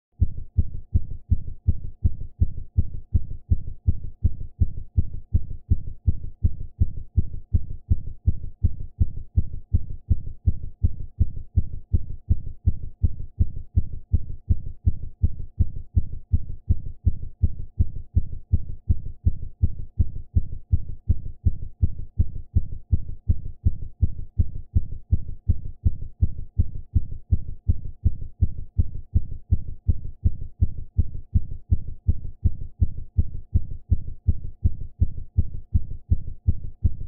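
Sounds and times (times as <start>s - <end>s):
deep heartbeat thumps: 0.2s - 37.0s.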